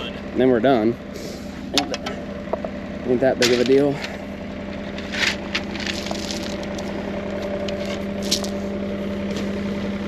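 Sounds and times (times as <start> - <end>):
engine idling: 0.0 - 10.0
shovels scraping gravel: 4.9 - 7.0, 7.8 - 8.6.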